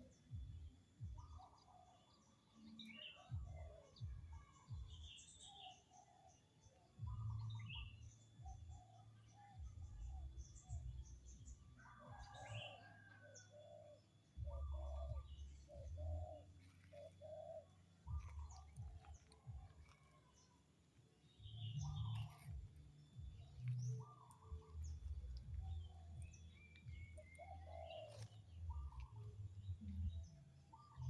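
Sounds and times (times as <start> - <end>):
birds chirping: 0.0 - 31.0
birds cooing: 11.8 - 20.6, 21.5 - 31.0
low rumble: 21.2 - 31.0.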